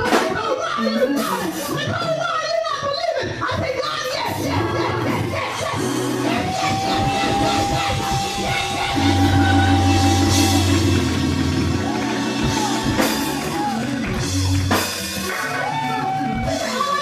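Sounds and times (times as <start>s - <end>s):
gospel band playing: 4.3s - 17.0s
drum kit: 4.4s - 17.0s.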